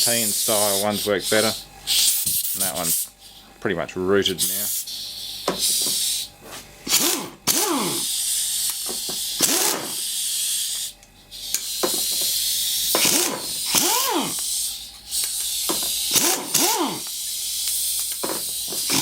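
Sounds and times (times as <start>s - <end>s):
compressed air hissing: 0.0s - 3.5s, 4.4s - 6.4s, 7.5s - 19.0s
pneumatic tool motor spinning: 4.4s - 19.0s.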